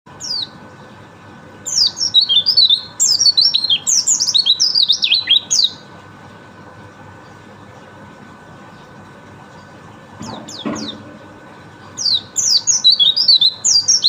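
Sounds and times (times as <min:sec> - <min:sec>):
small bird singing whistled notes: 0:00.2 - 0:00.6, 0:01.6 - 0:05.8, 0:12.0 - 0:14.0.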